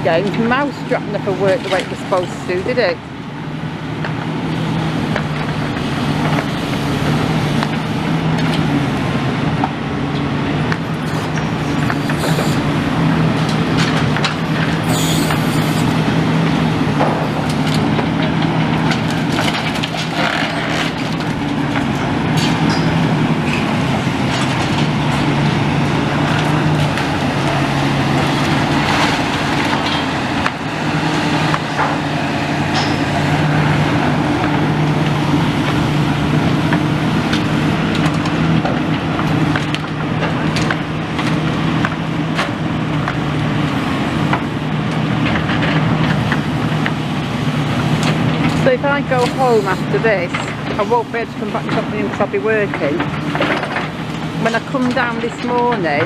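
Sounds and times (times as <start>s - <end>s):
diesel machinery running: 0.0s - 56.0s
clanks of metal and rubble: 17.0s - 25.3s, 32.7s - 33.2s, 48.0s - 56.0s.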